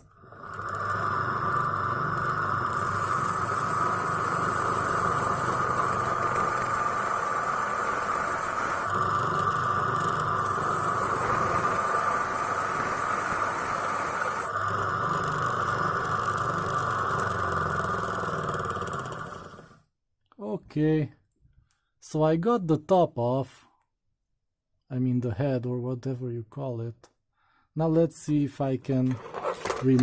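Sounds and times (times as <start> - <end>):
grinding wheel whining on metal: 0.0 - 19.7.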